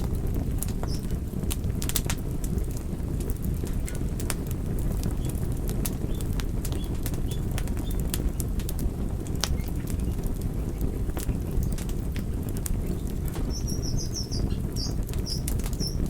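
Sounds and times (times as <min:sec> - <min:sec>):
low rumble of flames: 0:00.0 - 0:16.0
wood crackling and popping: 0:00.0 - 0:16.0.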